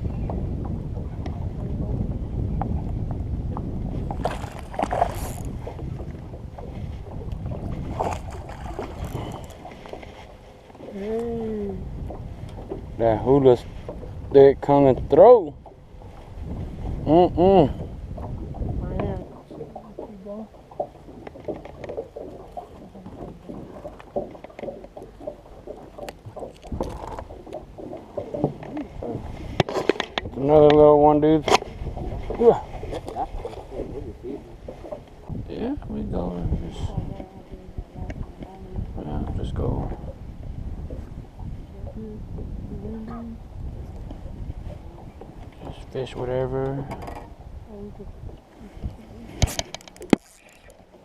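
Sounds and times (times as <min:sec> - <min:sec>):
water lapping against boat hull: 0:00.0 - 0:51.0
wind buffeting microphone: 0:00.0 - 0:51.0
rustling or splashing bursts: 0:04.0 - 0:11.2.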